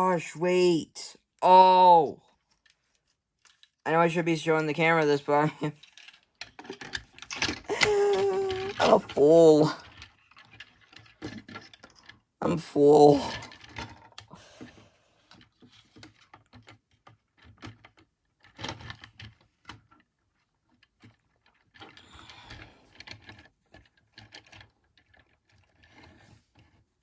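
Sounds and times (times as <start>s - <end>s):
plastic toy parts clicking: 5.7s - 14.3s, 15.3s - 26.8s.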